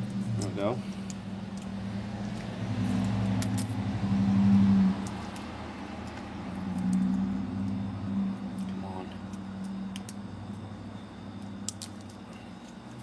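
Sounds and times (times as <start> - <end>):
small parts clinking and rattling: 0.0 - 3.8, 11.3 - 13.0
steady low hum: 0.0 - 13.0.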